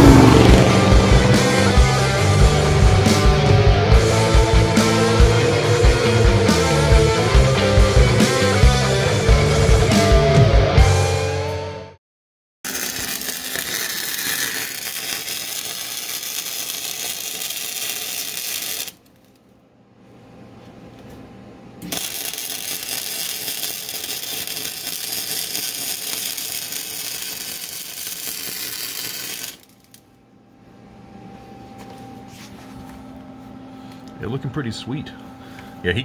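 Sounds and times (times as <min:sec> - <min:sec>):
welding arc crackling: 0:12.7 - 0:19.3, 0:21.8 - 0:30.0.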